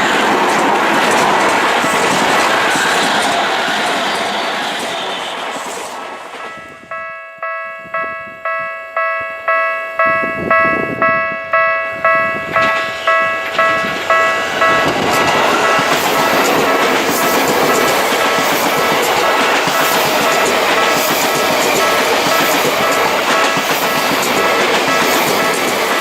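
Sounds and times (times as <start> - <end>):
passing train: 0.0 - 26.0
level crossing bell dinging: 6.5 - 16.5.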